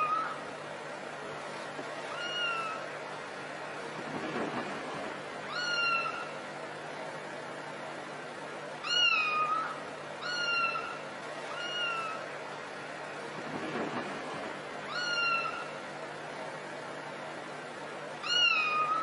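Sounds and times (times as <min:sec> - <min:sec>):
cat meowing: 0:02.1 - 0:02.8, 0:05.5 - 0:06.3, 0:08.8 - 0:12.2, 0:14.9 - 0:15.7, 0:18.2 - 0:19.0.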